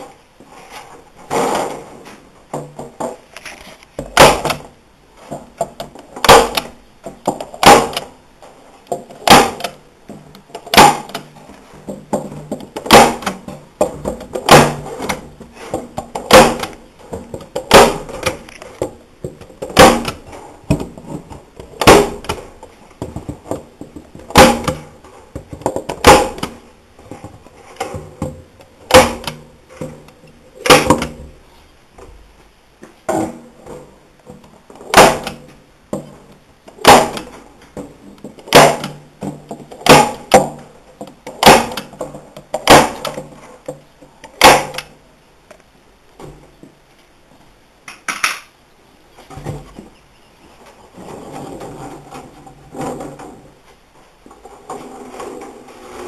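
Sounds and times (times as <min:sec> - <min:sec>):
blows driving fasteners into wood: 0:01.1 - 0:31.5, 0:34.4 - 0:45.0.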